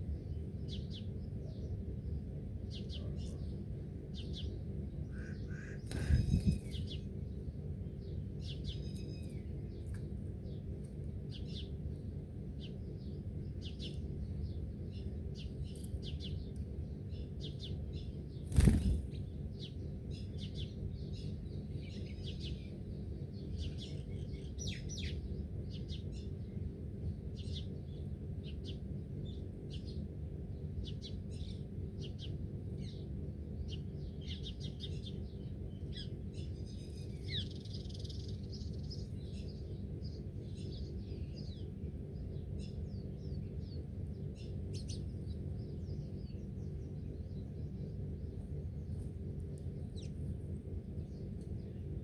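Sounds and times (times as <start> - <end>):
small birds chirping: 0.0 - 52.0
steady low rumble: 0.0 - 52.0.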